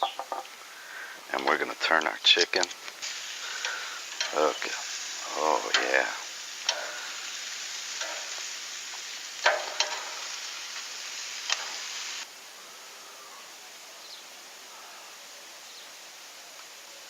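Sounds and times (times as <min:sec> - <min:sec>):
chicken sizzling on a grill: 0:00.0 - 0:17.0
utensil clicking against grill: 0:01.4 - 0:12.0.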